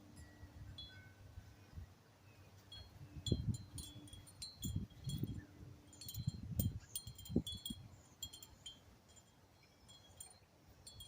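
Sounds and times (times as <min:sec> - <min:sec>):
wind chime tinkling: 0:02.8 - 0:11.0.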